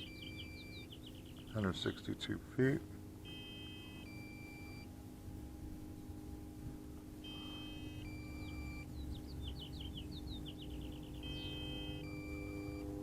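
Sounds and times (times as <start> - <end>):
two-tone electronic warning beep: 0.0 - 1.0, 3.2 - 4.9, 7.2 - 13.0
bird chirping: 0.0 - 2.2, 7.2 - 12.9.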